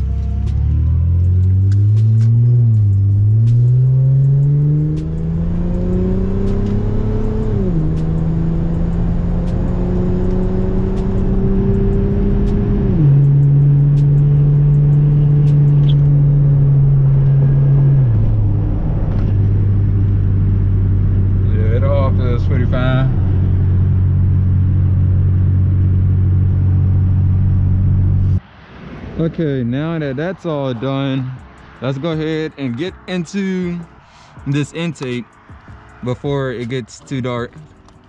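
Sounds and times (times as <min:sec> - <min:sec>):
car engine revving: 0:00.0 - 0:28.4.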